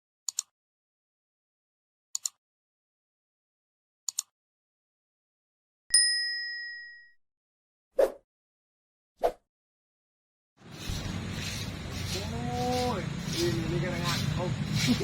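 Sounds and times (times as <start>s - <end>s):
bright metallic ding: 5.9s - 7.2s
steady background noise: 10.6s - 15.0s.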